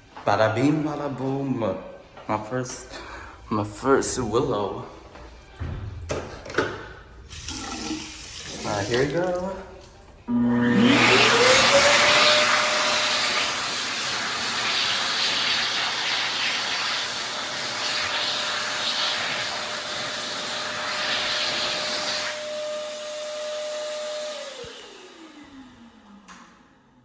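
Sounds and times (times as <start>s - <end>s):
hand dryer air rushing: 7.3s - 9.2s, 10.5s - 26.3s
hand dryer motor whine: 10.2s - 27.0s.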